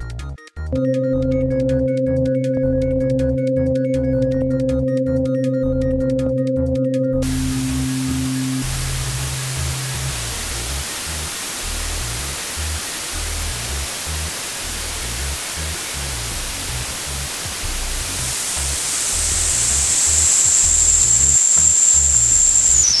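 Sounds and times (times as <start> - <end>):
low synth tones: 0.7 - 15.1
synthesizer noise hissing: 0.8 - 23.0
high narrow whistle: 18.4 - 23.0.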